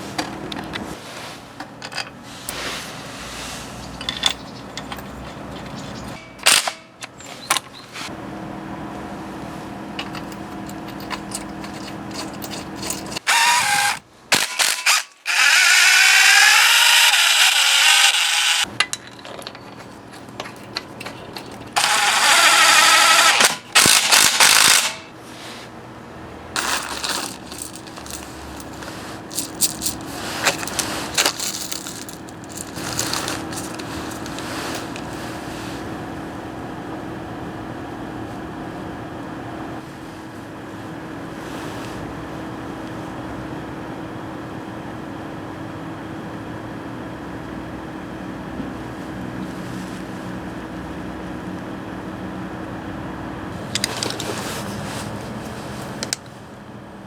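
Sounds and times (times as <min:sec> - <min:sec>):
tools and metal parts clinking: 0:01.8 - 0:02.6, 0:03.8 - 0:08.0, 0:10.0 - 0:25.1, 0:26.6 - 0:35.4, 0:53.6 - 0:54.8
power drill motor whine: 0:13.2 - 0:18.7, 0:21.8 - 0:25.1.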